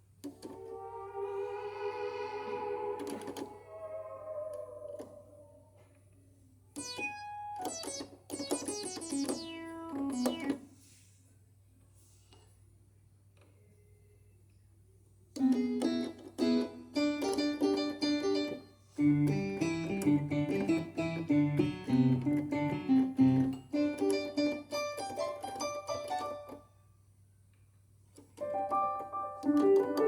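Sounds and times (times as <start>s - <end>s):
keyboard playing piano notes: 6.8s - 10.6s, 15.4s - 26.6s, 28.4s - 30.0s.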